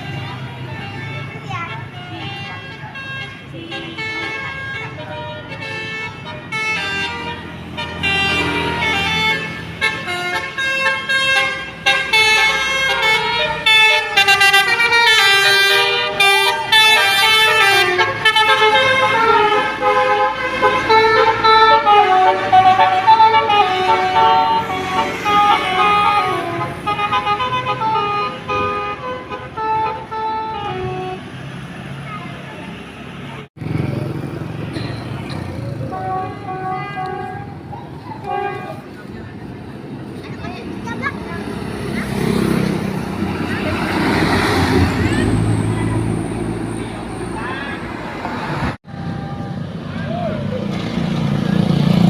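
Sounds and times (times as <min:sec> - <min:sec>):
multi-tone air horns melody: 0:00.0 - 0:31.4, 0:35.8 - 0:39.0.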